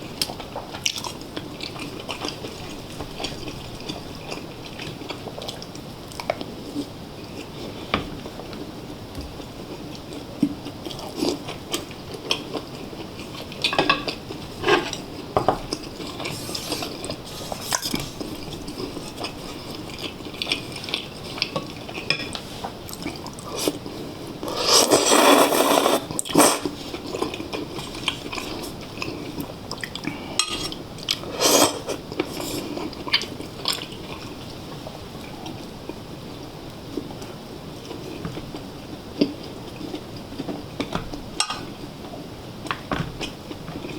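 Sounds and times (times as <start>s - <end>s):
quiet chewing: 9.7s - 36.0s.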